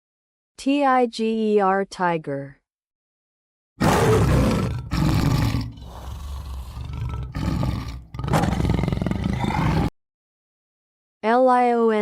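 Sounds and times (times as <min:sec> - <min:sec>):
tiger growling: 0:03.8 - 0:09.9
tiger roaring: 0:03.8 - 0:09.9.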